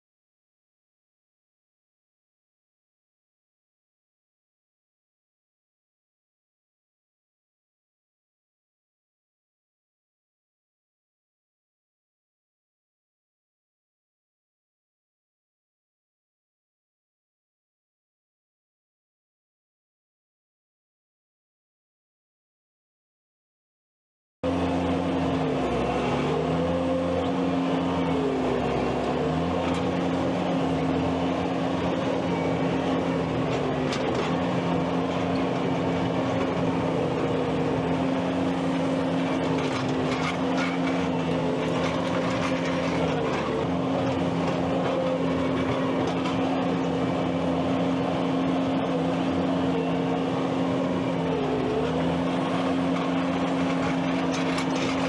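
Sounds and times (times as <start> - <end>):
skid steer engine running: 24.4 - 55.0.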